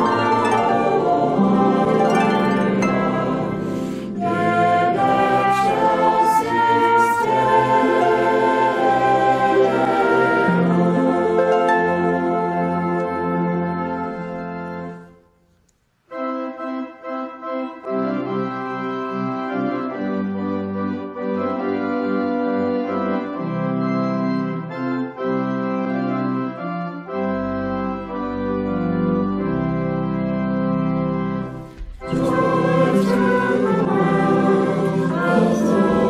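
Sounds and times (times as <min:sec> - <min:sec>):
organ chords: 0:00.0 - 0:36.0
deep organ pedal bass notes: 0:16.2 - 0:36.0.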